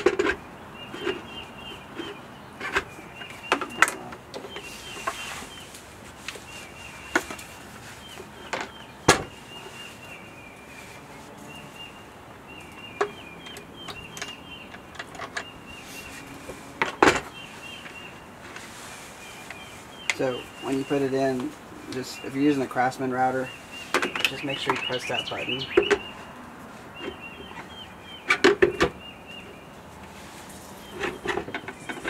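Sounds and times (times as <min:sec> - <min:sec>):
small bird chirping: 0:00.6 - 0:16.4, 0:17.0 - 0:26.3.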